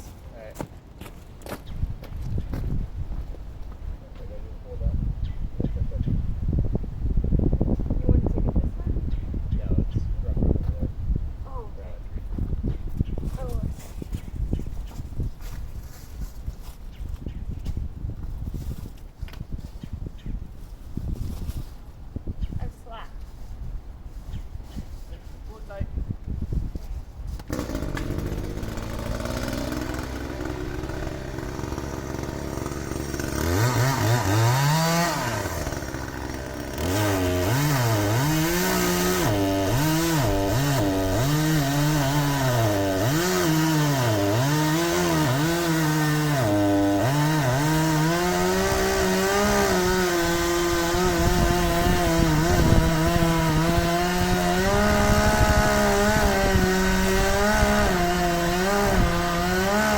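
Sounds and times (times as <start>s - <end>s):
chainsaw idling and revving: 27.4s - 59.9s.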